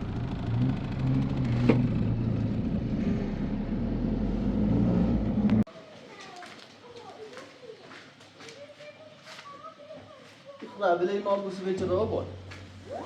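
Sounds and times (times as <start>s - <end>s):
truck engine droning: 0.0s - 5.7s.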